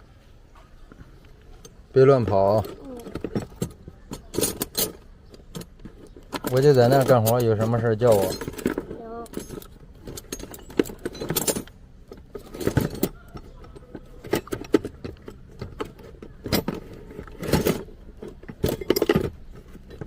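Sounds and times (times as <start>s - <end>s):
metal tools clinking and knocking: 1.5s - 20.0s.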